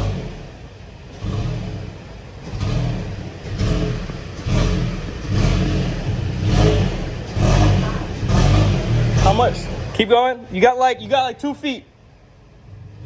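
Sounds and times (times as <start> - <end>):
pickup truck engine revving: 0.0 - 10.1.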